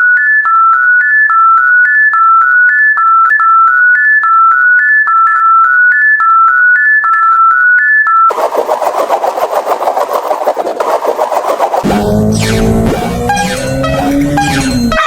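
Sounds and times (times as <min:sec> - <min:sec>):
electronic beeping melody: 0:11.8 - 0:15.0.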